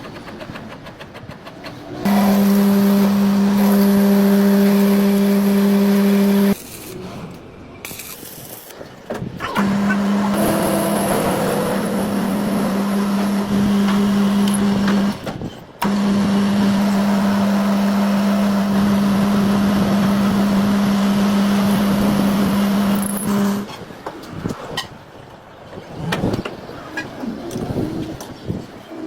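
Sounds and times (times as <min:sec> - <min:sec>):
power tool humming: 0:02.1 - 0:06.6, 0:09.6 - 0:23.7.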